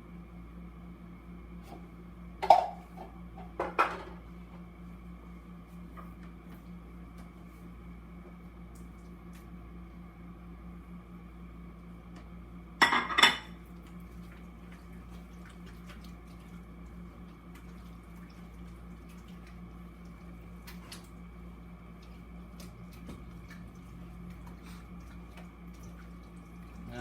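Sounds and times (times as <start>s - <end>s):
steady low hum: 0.0s - 27.0s
dishes and utensils clattering: 12.8s - 13.6s.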